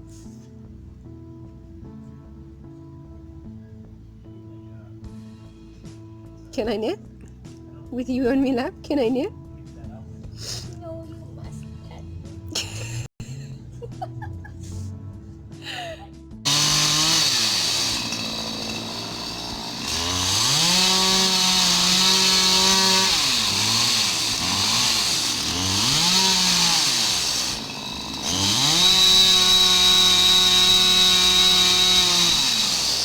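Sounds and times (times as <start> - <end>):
chainsaw revving: 16.5 - 33.0.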